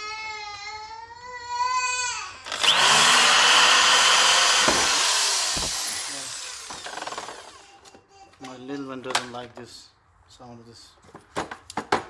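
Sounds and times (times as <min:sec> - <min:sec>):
electric drill boring: 0:02.4 - 0:07.8.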